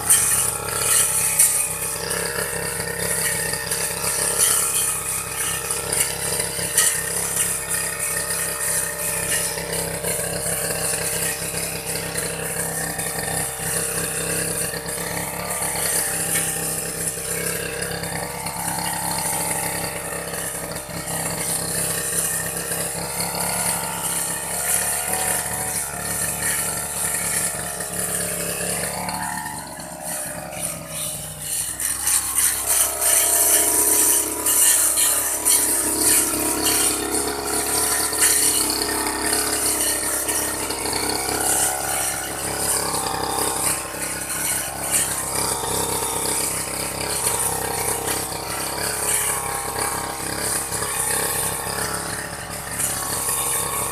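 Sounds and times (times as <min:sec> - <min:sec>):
lawn mower engine running: 0:00.0 - 0:53.9.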